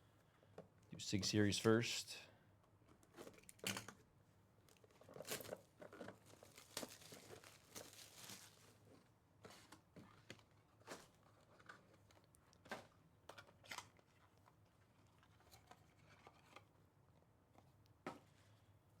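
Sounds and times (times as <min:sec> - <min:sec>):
packaging crinkling and tearing: 0:04.7 - 0:08.8.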